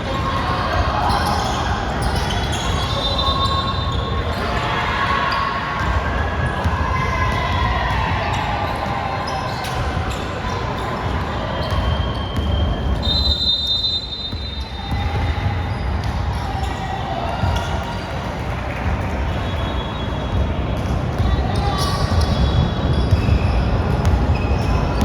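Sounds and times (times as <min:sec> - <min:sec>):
shoe squeaks: 0:01.1 - 0:04.4
basketball bouncing on court: 0:11.6 - 0:13.1, 0:20.8 - 0:25.0.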